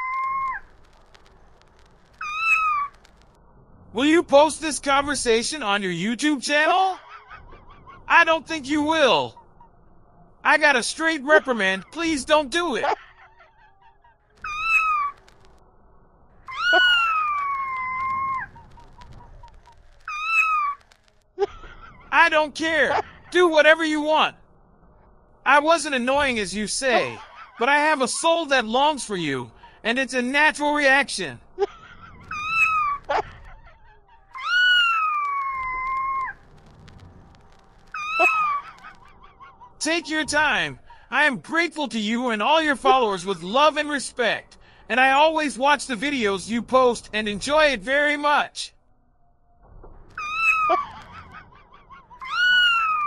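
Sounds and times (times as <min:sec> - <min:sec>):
cat meowing: 0:16.5 - 0:18.5, 0:38.0 - 0:38.8, 0:52.2 - 0:53.0.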